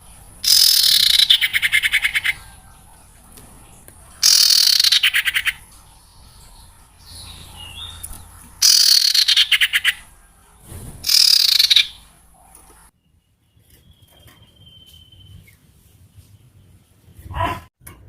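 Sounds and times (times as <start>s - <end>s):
owl rasping screeches: 0.4s - 2.4s, 4.2s - 5.6s, 8.6s - 10.0s, 11.0s - 12.0s.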